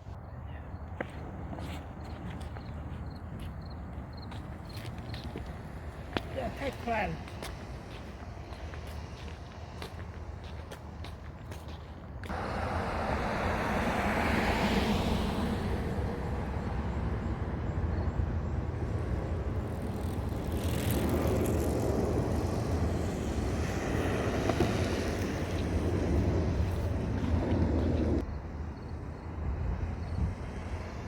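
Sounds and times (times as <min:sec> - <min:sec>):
skateboard wheels rumbling: 0:19.0 - 0:28.2
wind on microphone: 0:19.2 - 0:28.5.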